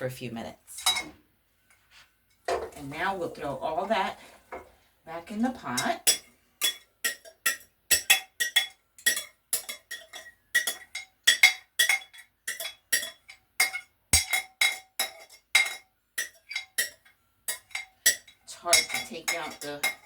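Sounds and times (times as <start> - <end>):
utensil clinking against metal pot: 0.8 - 1.2, 5.4 - 20.0.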